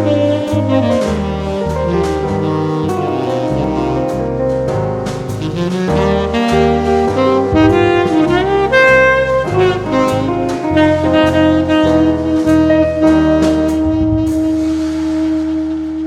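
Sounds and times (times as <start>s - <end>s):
bass: 0.0s - 16.0s
drum kit: 0.0s - 16.0s
piano: 0.0s - 16.0s
saxophone: 0.0s - 16.0s.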